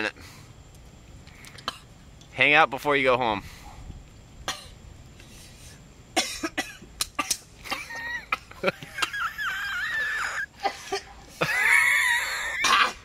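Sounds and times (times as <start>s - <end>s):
man coughing: 6.2s - 9.3s, 12.4s - 13.0s.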